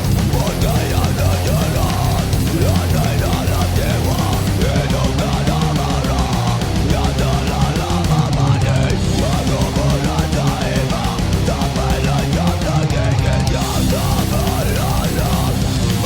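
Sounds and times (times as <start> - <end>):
heavy metal music: 0.0 - 16.0.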